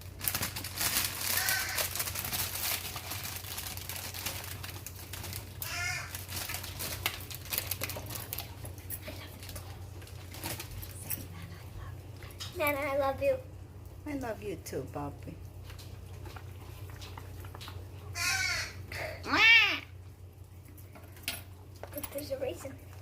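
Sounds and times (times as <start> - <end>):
rustling and clicking: 15.5 - 18.0.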